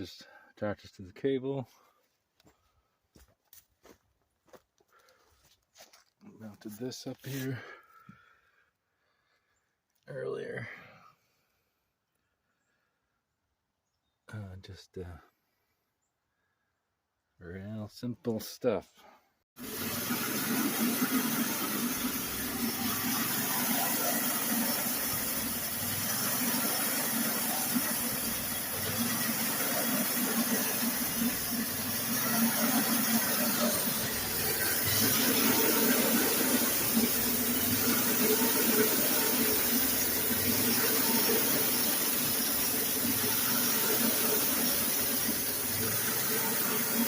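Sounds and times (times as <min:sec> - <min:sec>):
engine hum: 0:19.6 - 0:47.0
sawmill hiss: 0:19.6 - 0:47.0.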